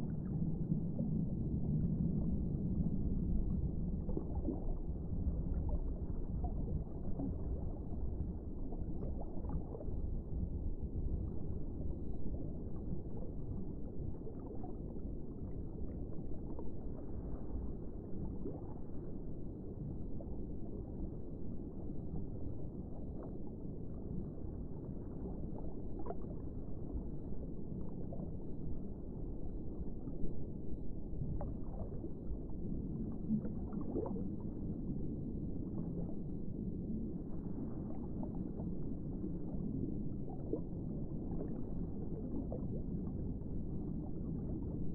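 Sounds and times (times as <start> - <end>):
muffled underwater rumble: 0.0 - 44.9.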